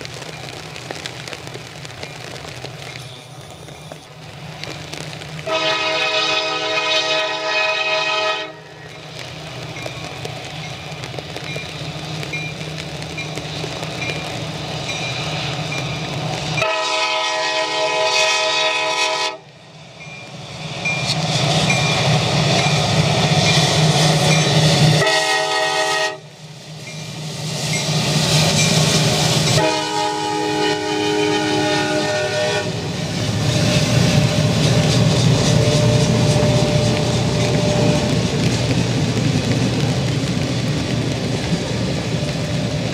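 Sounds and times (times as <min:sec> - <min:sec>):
diesel locomotive rumble: 0:00.0 - 0:42.9
train horn blasts: 0:05.4 - 0:08.8, 0:16.6 - 0:19.5, 0:25.0 - 0:26.3, 0:29.5 - 0:32.9, 0:35.6 - 0:38.2.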